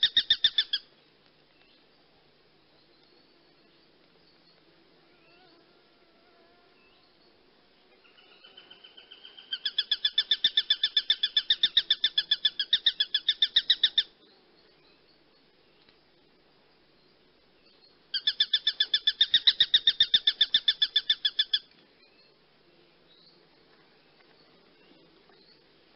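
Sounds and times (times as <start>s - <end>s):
hawk chattering calls: 0.0s - 0.9s, 8.1s - 14.2s, 18.1s - 21.7s.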